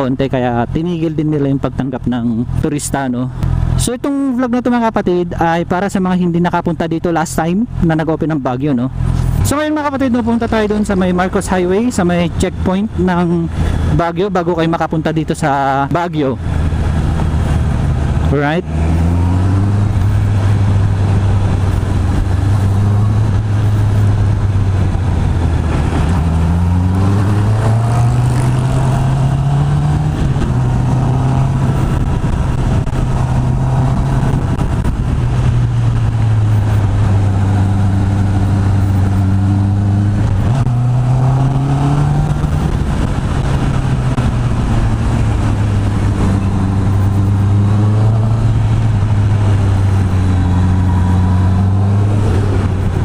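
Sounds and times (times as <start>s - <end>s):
motorcycle engine revving: 16.4s - 53.0s.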